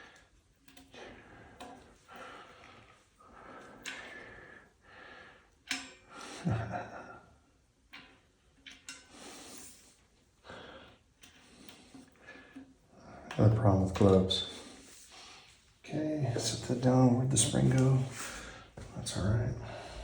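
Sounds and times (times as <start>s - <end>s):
breathing close to microphone: 18.1s - 18.9s, 19.6s - 20.0s.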